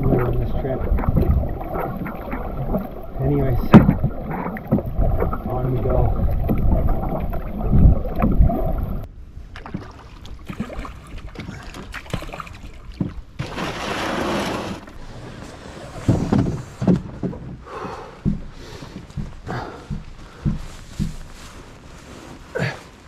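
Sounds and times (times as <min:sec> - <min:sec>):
paddle knocks: 0:00.0 - 0:08.8, 0:12.9 - 0:14.9, 0:15.8 - 0:21.4
wind rumbling on microphone: 0:00.0 - 0:11.4
water splashing: 0:00.0 - 0:17.6.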